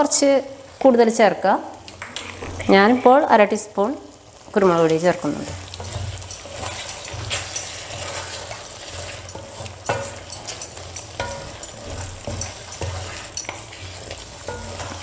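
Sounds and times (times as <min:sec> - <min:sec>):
light sizzle: 0:00.0 - 0:15.0
spoon scraping and clinking pan: 0:05.5 - 0:15.0.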